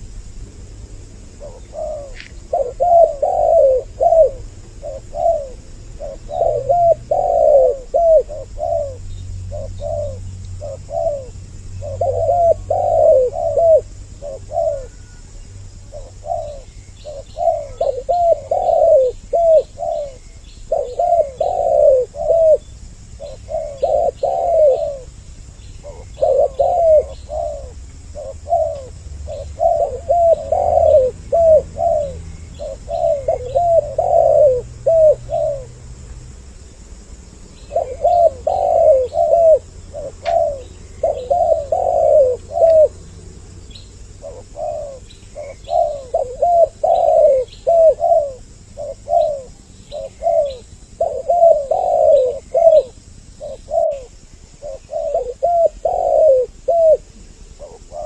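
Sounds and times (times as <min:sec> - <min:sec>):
doves cooing: 0:00.9 - 0:58.0
faint high chirping: 0:01.3 - 0:35.7, 0:37.5 - 0:58.0.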